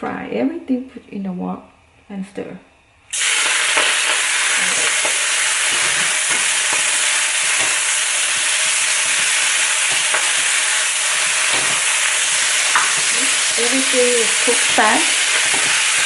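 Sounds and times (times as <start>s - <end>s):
food sizzling in a wok: 3.1s - 16.0s
spatula scraping wok: 3.7s - 16.0s.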